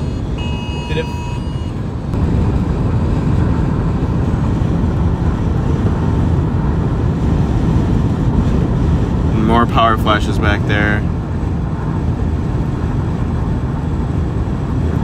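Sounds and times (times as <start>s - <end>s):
electronic tone: 0.0s - 1.8s
road and wind noise in car: 0.0s - 15.0s.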